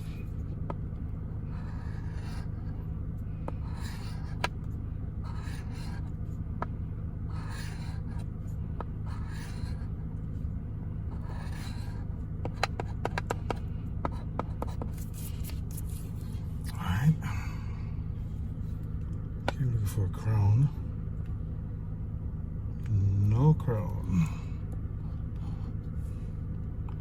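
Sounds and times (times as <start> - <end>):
steady low hum: 0.0 - 27.0
lottery ticket being scratched: 5.3 - 6.0, 14.2 - 16.3.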